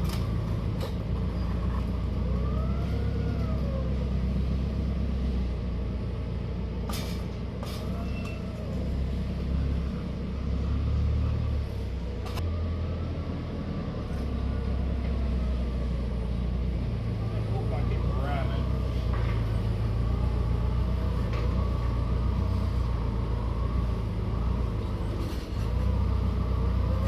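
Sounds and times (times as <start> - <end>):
forklift engine revving: 0.0 - 27.0.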